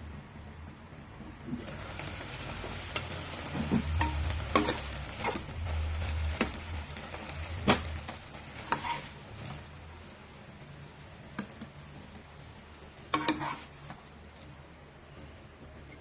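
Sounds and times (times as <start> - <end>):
shrimp sizzling in oil: 1.6 - 14.6
utensil clicking against pan: 13.1 - 13.6.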